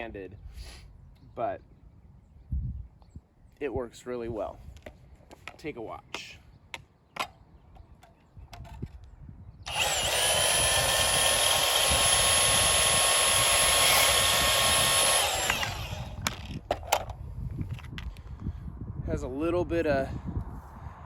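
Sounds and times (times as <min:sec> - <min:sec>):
band saw cutting pipe: 0:09.7 - 0:16.6.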